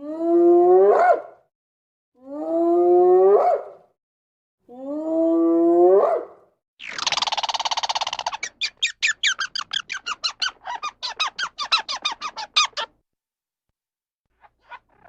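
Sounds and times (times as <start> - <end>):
animal squeaking chirps: 6.8 - 12.9, 14.4 - 15.0.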